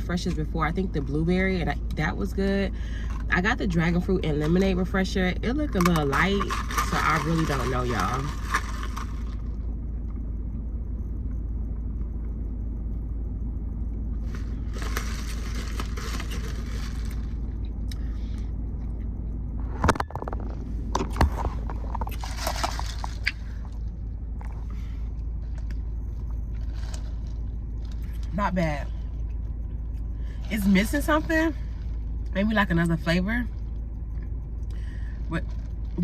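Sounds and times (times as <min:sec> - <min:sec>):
low rumble inside a car: 0:00.0 - 0:36.0
rustling: 0:05.8 - 0:09.5, 0:14.2 - 0:17.4, 0:20.6 - 0:23.5.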